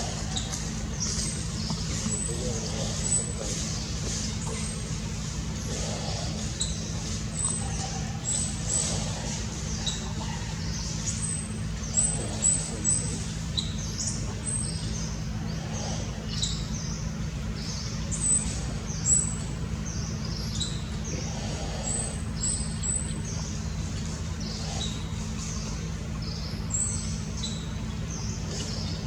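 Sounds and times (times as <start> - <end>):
small birds chirping: 0.0 - 29.0
steady low hum: 0.0 - 29.0.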